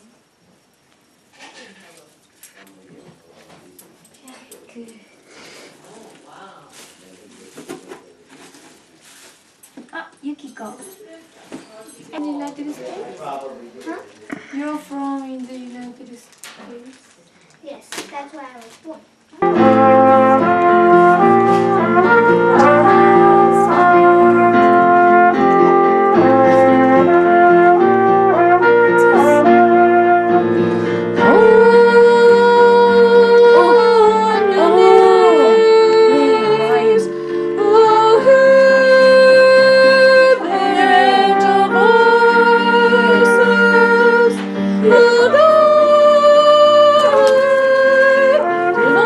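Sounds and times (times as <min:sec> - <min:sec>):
christmas programme music: 0:19.4 - 0:32.1, 0:33.4 - 0:49.0.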